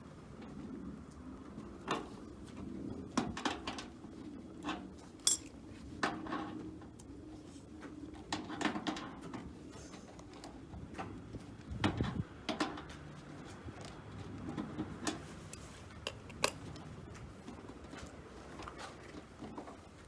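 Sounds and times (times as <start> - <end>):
metal tools clinking: 5.2 - 5.6, 15.5 - 16.8.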